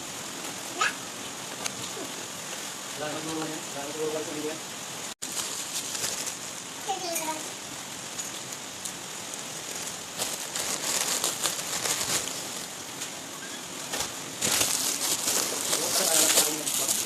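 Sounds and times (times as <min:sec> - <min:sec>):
plastic packaging crinkling: 0:05.2 - 0:06.6, 0:09.2 - 0:12.9, 0:13.8 - 0:17.0.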